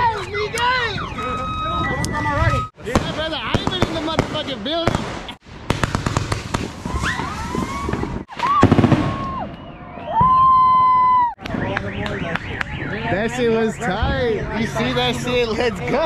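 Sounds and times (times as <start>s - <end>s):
fireworks whistling: 2.5s - 12.9s
fireworks crackling: 2.8s - 10.6s.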